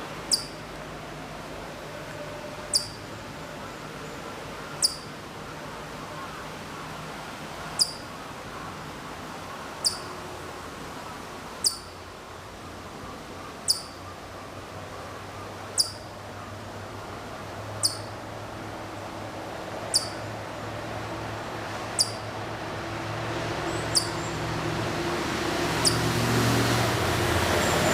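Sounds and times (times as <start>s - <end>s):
chipmunk chirping: 0.3s - 0.6s, 2.7s - 3.0s, 4.8s - 5.1s, 7.8s - 8.1s, 9.8s - 10.1s, 11.6s - 12.0s, 13.6s - 14.0s, 15.7s - 16.1s, 17.8s - 18.1s, 19.9s - 20.2s, 22.0s - 22.2s, 23.8s - 24.3s, 25.8s - 26.1s.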